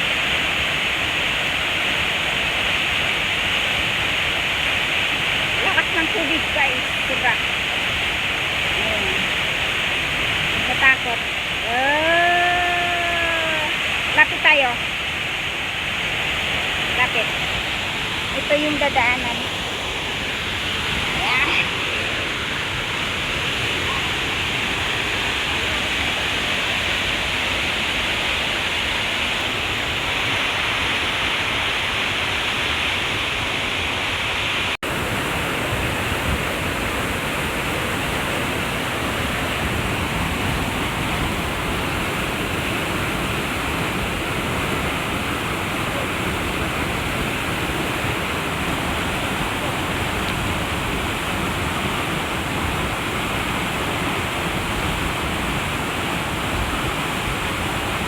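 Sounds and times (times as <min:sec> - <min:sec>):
water rushing: 0:00.0 - 0:58.0.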